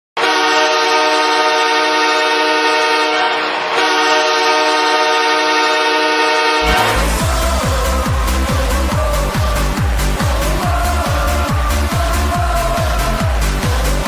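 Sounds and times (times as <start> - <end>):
goal horn blasts: 0.2 - 8.3.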